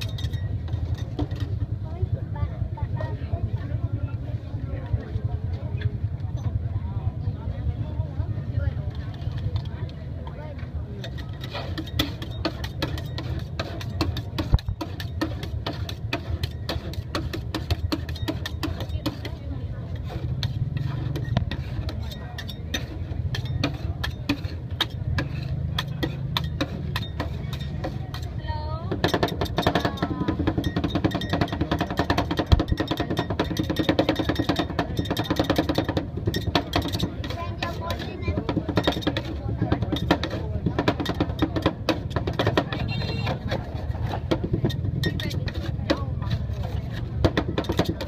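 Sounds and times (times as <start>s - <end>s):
metal spatulas tapping steel plate: 0.0s - 1.6s, 11.0s - 19.5s, 20.3s - 43.6s, 44.3s - 46.4s.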